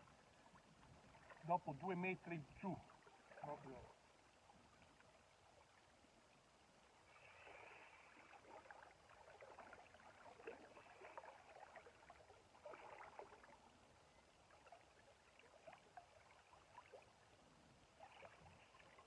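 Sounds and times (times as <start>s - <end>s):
river water lapping and trickling: 0.0s - 19.0s
small water splashes: 0.0s - 19.0s.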